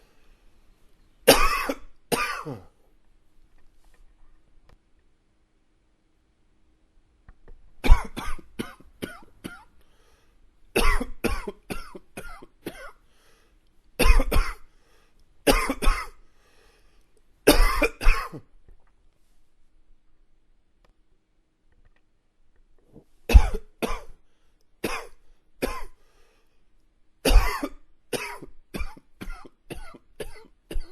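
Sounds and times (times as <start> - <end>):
man coughing: 1.3 - 2.8, 7.8 - 9.7, 10.8 - 13.0, 14.0 - 14.6, 15.5 - 16.2, 17.5 - 18.5, 23.3 - 24.2, 24.8 - 26.0, 27.3 - 30.9.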